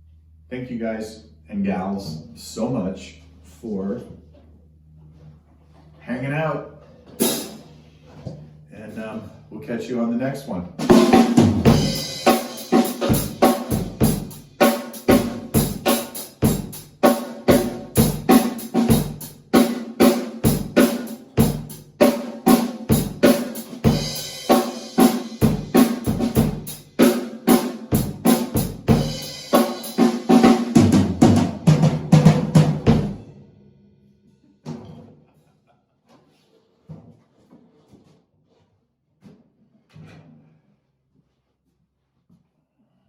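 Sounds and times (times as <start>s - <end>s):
drum kit playing a groove: 7.2s - 7.7s, 10.8s - 33.3s.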